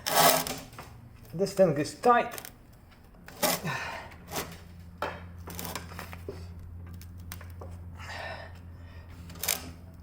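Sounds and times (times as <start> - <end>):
steady low hum: 0.0 - 10.0
creaking and scraping under load: 2.2 - 10.0.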